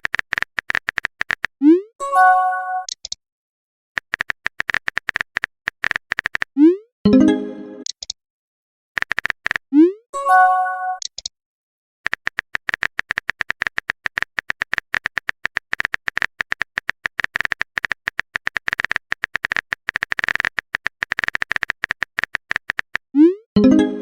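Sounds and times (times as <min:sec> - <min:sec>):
keyboard typing clicks: 0:00.0 - 0:01.6, 0:02.8 - 0:03.2, 0:04.0 - 0:06.7, 0:09.0 - 0:09.6, 0:12.1 - 0:23.0.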